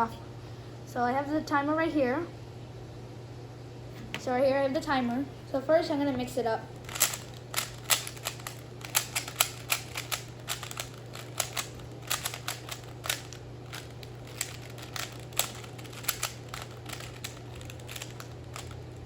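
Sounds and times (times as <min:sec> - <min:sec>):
puzzle cube twisting clicks: 0:06.8 - 0:19.0.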